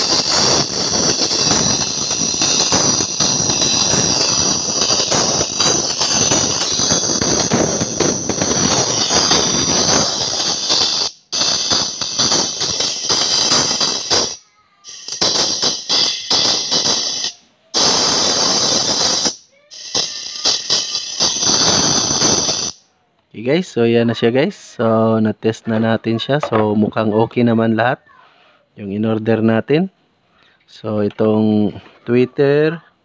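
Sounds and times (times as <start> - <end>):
treble-heavy music through tweeter: 0.0 - 22.9.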